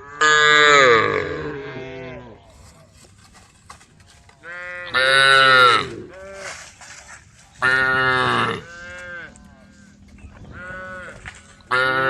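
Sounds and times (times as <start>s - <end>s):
cattle mooing: 0.0s - 2.4s, 4.4s - 6.8s, 7.6s - 12.0s.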